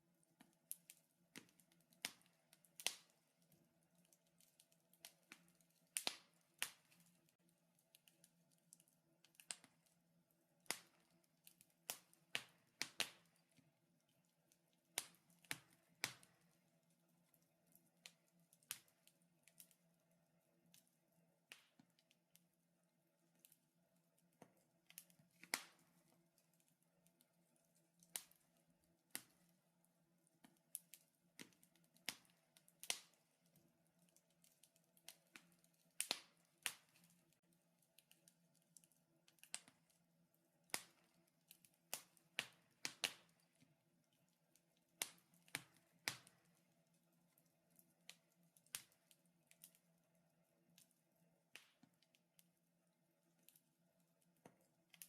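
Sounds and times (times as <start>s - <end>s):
wood fire crackling: 0.0s - 52.5s.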